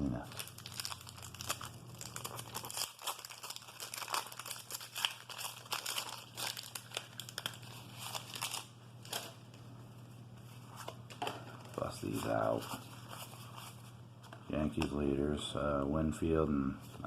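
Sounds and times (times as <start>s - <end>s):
wax paper wrapper crinkling: 0.0s - 9.6s, 10.4s - 14.0s.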